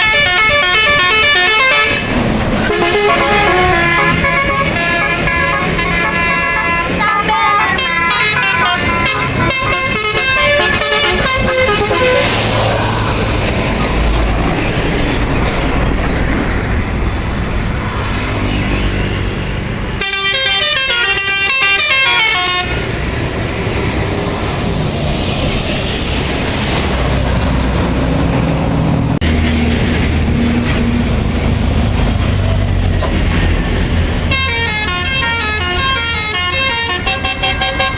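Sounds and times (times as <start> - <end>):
bus horn playing a stepped melody: 0.0 - 12.4, 20.0 - 22.9, 34.3 - 37.9
bus engines and traffic: 0.0 - 37.9.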